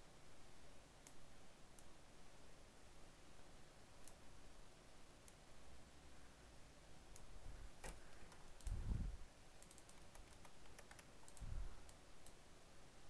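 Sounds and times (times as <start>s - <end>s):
mouse and keyboard clicks: 9.6s - 12.4s.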